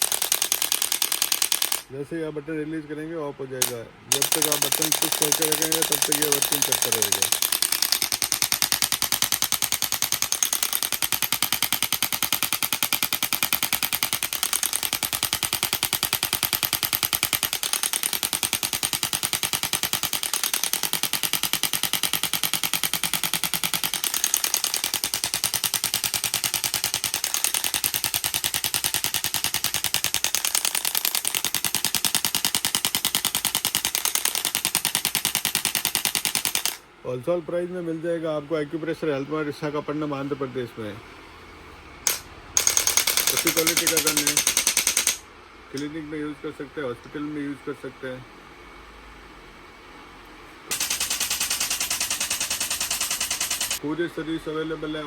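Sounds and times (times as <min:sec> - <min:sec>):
adjusting gun rapid impulses: 0:00.0 - 0:01.9, 0:03.6 - 0:36.8, 0:42.1 - 0:45.2, 0:50.7 - 0:53.8.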